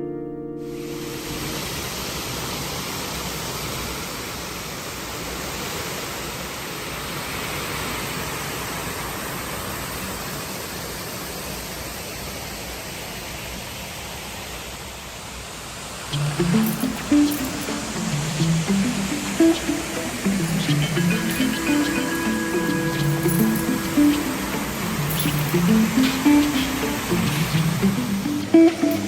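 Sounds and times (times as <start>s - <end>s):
rushing water: 16.1s - 29.0s.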